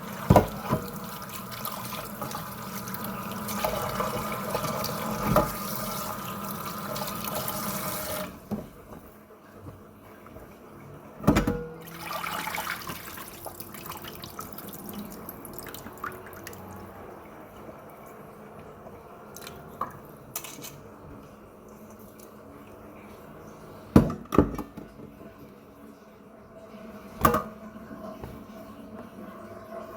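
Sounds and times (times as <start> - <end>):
tap water running into sink: 0.0 - 8.7, 11.8 - 16.7.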